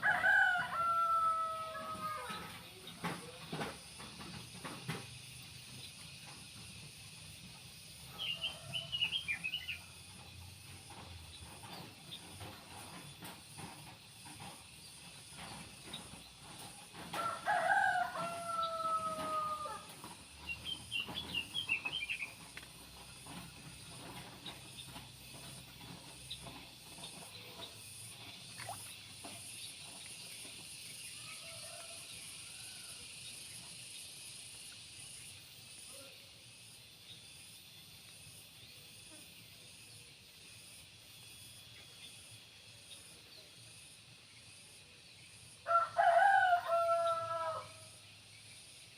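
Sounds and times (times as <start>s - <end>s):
rooster crowing: 0.0s - 2.6s, 8.1s - 9.8s, 17.1s - 20.1s, 31.2s - 33.1s, 45.6s - 48.0s.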